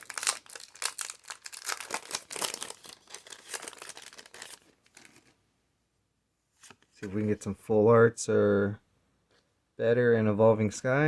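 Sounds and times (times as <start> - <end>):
foil wrapper crinkling: 0.0 - 5.3.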